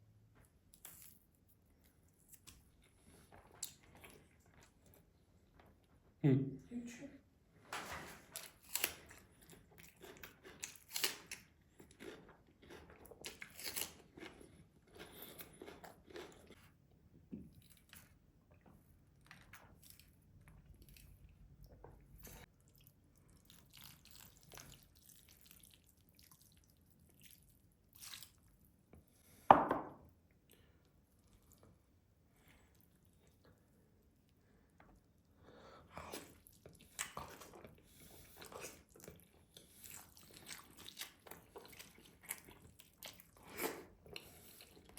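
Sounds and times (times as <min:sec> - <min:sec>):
close chewing sounds: 0:08.6 - 0:16.8, 0:17.6 - 0:28.8, 0:35.9 - 0:44.9.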